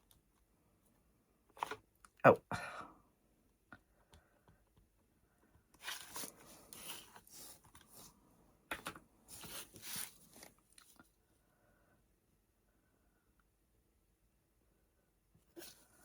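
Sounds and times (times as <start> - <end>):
paper rustling and scraping: 5.8 - 8.1, 9.3 - 10.9.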